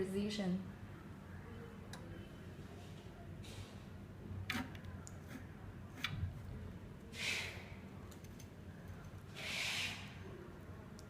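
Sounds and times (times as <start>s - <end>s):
low steady hum: 0.0s - 11.0s
short hiss: 9.4s - 10.1s.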